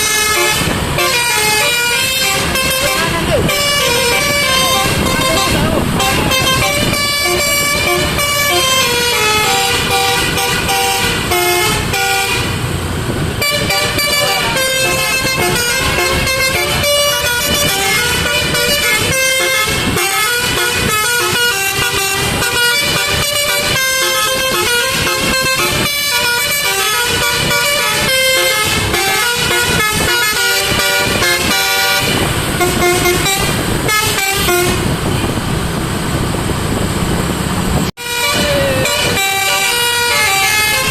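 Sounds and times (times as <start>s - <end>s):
musical air horn tune: 0.0s - 12.6s, 13.4s - 35.4s, 38.0s - 40.9s.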